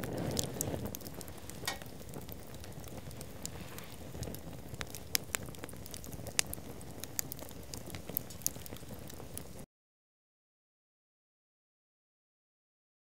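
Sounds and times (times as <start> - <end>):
bonfire crackling and popping: 0.0 - 9.7.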